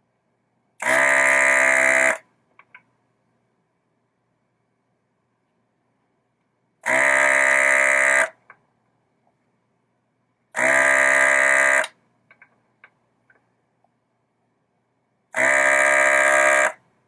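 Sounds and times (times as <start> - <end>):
desoldering pump buzzing: 10.6 - 11.9, 15.4 - 16.8.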